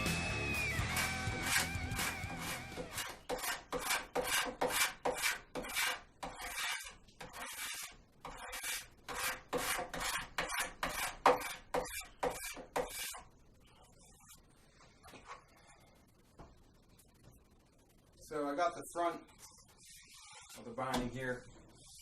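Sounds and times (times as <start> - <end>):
scraper strokes on wood: 0.8 - 13.2, 19.7 - 20.7.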